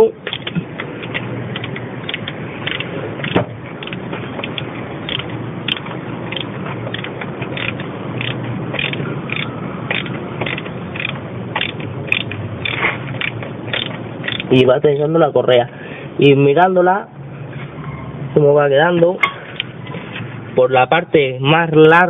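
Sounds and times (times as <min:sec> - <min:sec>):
wrench metallic clicks and scrapes: 0:00.0 - 0:15.2, 0:19.2 - 0:20.3.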